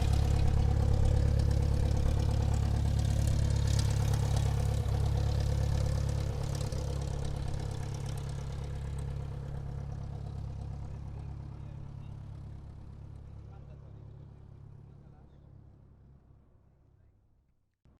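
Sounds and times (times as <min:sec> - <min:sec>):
airplane engines humming: 0:00.0 - 0:04.4.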